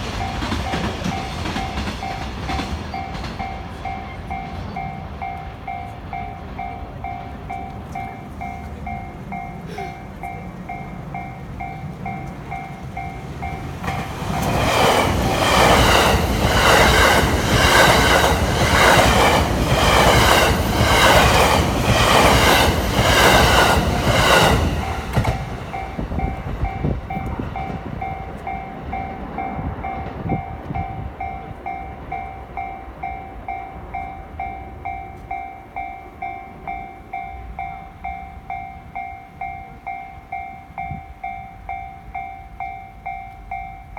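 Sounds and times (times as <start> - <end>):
train passing: 0.0 - 43.9
level crossing bell ringing: 0.2 - 14.4.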